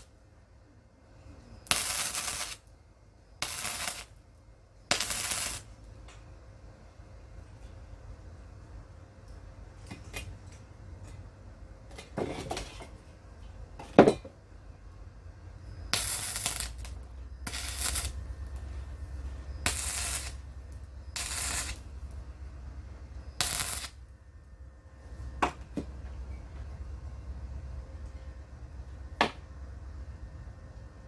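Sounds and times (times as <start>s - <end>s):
arc welding bursts: 1.6s - 2.7s, 3.4s - 4.2s, 4.9s - 5.8s, 15.7s - 22.3s, 23.4s - 24.1s
low hum: 12.9s - 31.0s.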